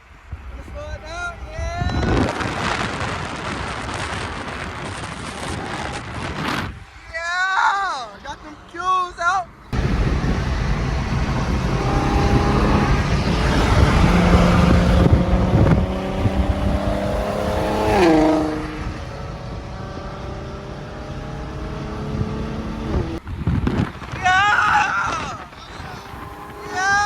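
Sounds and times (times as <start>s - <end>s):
car engine and exhaust accelerating: 9.4s - 24.2s, 25.1s - 27.0s.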